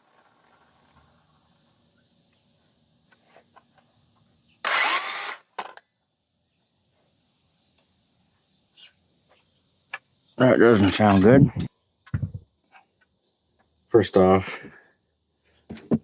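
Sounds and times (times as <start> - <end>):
circular saw burst: 4.6 - 5.6.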